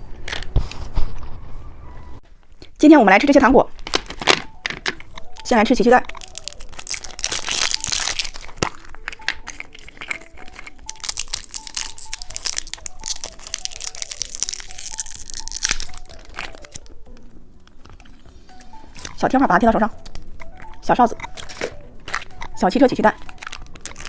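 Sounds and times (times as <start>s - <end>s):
wrapper crinkling and tearing: 3.7s - 18.2s, 20.0s - 24.0s.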